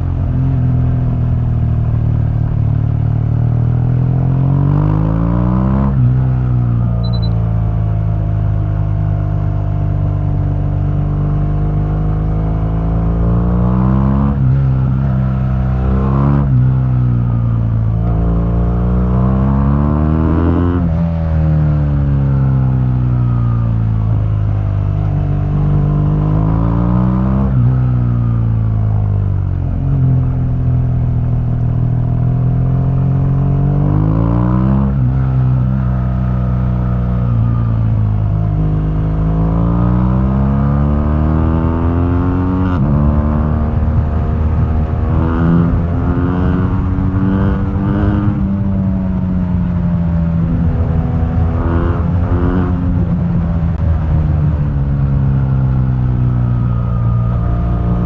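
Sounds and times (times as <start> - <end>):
motorcycle engine revving: 38.5 - 54.3.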